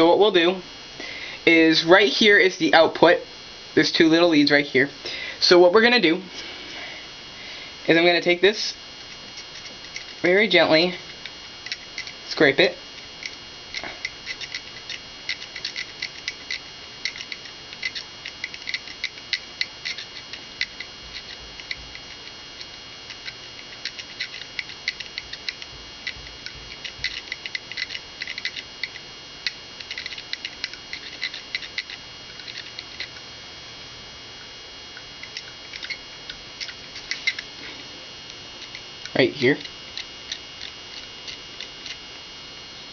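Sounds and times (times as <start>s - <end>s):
knife blade scraping circuit board: 9.0s - 33.3s, 34.2s - 42.5s.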